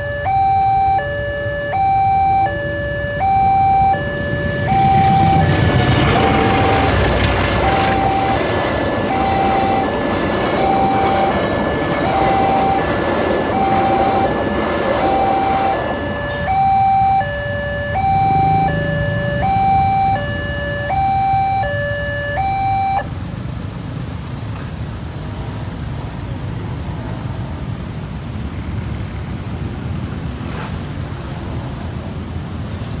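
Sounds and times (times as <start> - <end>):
two-tone crossing alarm chime: 0.0 - 23.1
passing train rumble: 0.0 - 33.0
road noise: 0.0 - 33.0.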